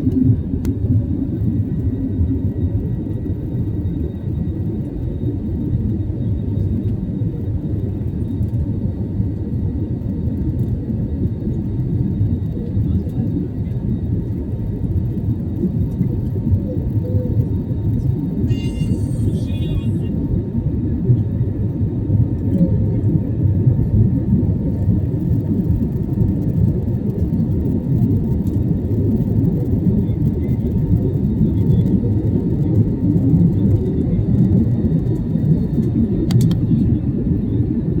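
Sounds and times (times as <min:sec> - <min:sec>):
jet engine cabin rumble: 0:00.0 - 0:38.0.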